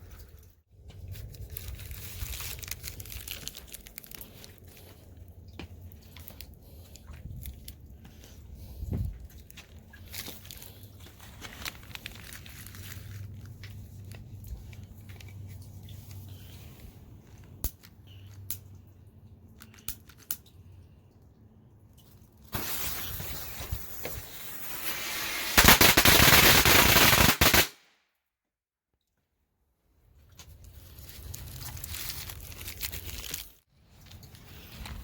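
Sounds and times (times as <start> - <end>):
firecrackers popping and crackling: 22.5 - 27.8.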